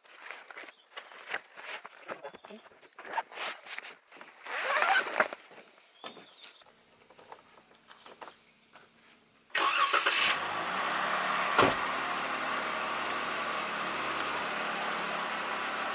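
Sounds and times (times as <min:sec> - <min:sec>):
car engine starting and idling: 0:09.5 - 0:15.9.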